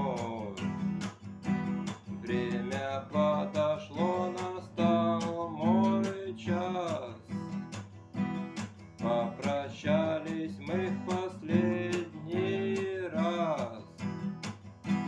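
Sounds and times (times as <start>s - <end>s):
person singing: 0.0s - 0.8s, 2.2s - 7.3s, 9.0s - 13.9s
acoustic guitar strumming: 0.0s - 15.0s.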